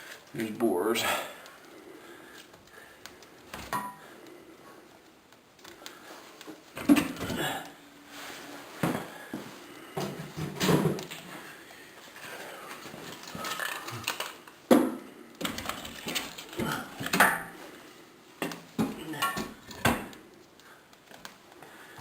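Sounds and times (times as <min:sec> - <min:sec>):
firewood logs clattering: 0:09.9 - 0:17.7, 0:18.4 - 0:22.0.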